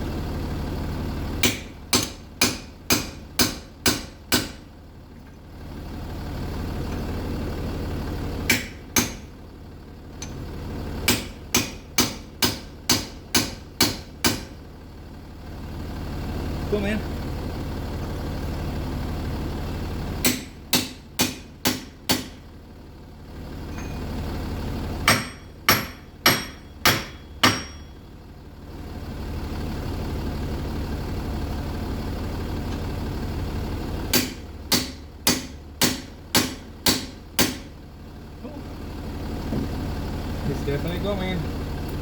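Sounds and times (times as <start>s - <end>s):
diesel engine idling: 0.0s - 42.0s
hammer striking metal hub: 1.4s - 4.6s, 8.5s - 9.3s, 11.1s - 14.6s, 20.2s - 22.4s, 23.7s - 24.1s, 25.1s - 28.0s, 34.1s - 37.7s.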